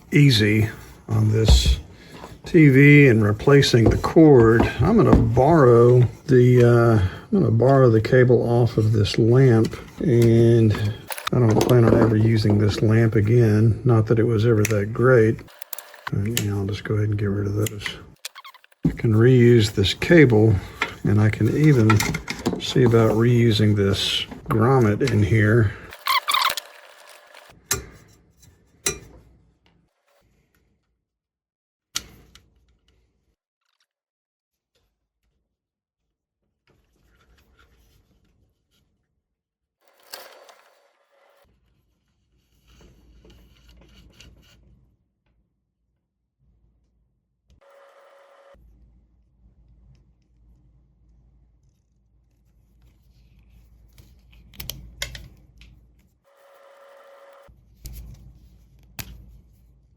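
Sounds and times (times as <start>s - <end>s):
tools handled at a workbench: 1.4s - 2.4s, 20.6s - 23.2s
light scraping and rubbing: 14.5s - 27.5s.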